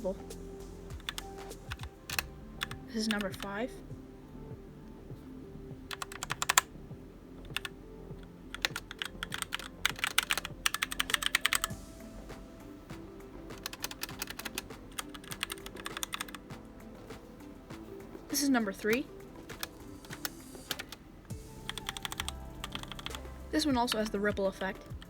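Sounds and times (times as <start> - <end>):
mechanical keyboard typing: 0.9 - 3.6, 5.9 - 6.7, 7.5 - 7.8, 8.5 - 11.7, 13.5 - 17.2, 18.2 - 21.0, 21.6 - 23.2.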